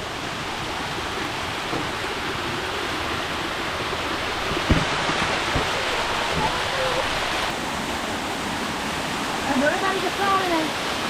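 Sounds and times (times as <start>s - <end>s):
waterfall roaring: 0.0s - 11.0s
low thump: 4.5s - 6.6s.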